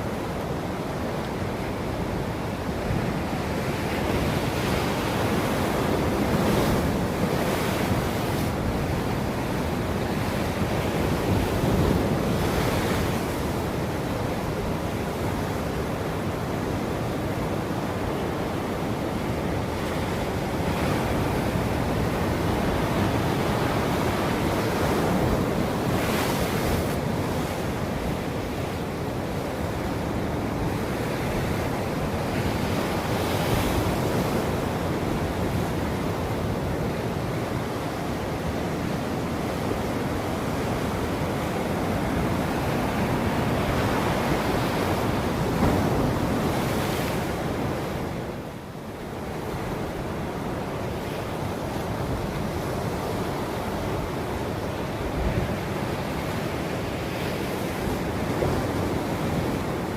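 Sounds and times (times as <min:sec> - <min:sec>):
ocean waves washing: 0:00.0 - 0:59.9.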